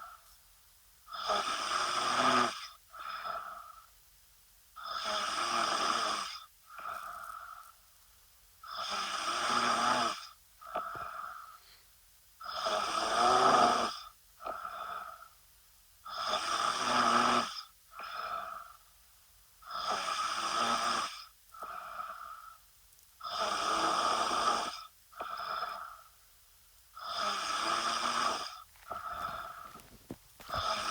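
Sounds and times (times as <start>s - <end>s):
woman snoring: 1.1s - 3.8s, 4.8s - 7.7s, 8.6s - 11.6s, 12.4s - 15.3s, 16.1s - 18.8s, 19.6s - 22.6s, 23.2s - 26.1s, 27.0s - 30.9s.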